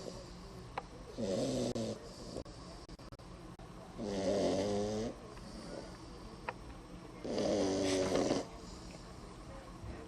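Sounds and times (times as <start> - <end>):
puppy snoring: 1.1 - 2.6, 4.0 - 5.9, 7.2 - 8.7.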